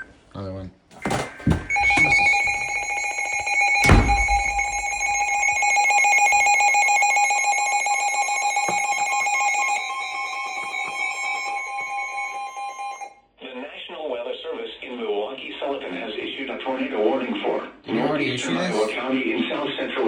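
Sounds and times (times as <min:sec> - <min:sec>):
pulsing electronic alarm: 0:01.0 - 0:13.2.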